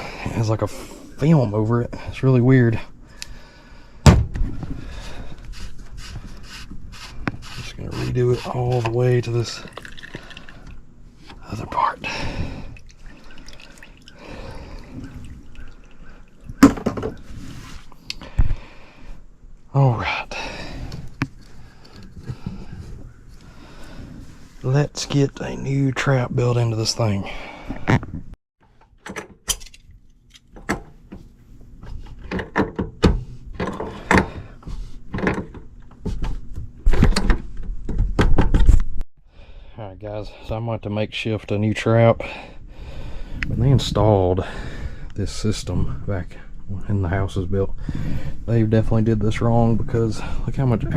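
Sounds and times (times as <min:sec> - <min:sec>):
water dripping: 0:09.6 - 0:10.8, 0:12.7 - 0:16.6
pipe and tools clicking and rattling: 0:28.7 - 0:38.8.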